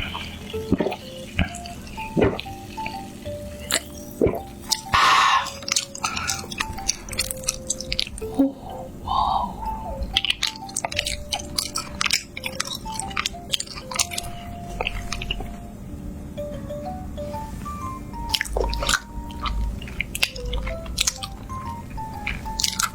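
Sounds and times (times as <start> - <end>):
close chewing and crunching: 0.0 - 15.6, 18.2 - 22.9
soft background music: 0.0 - 22.9.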